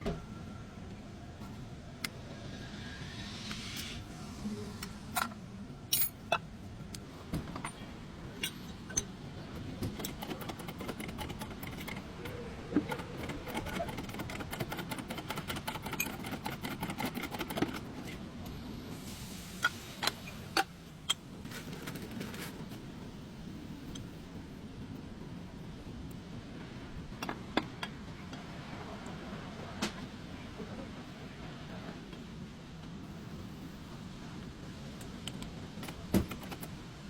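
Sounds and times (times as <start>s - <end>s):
metal tools clinking: 5.9s - 6.3s.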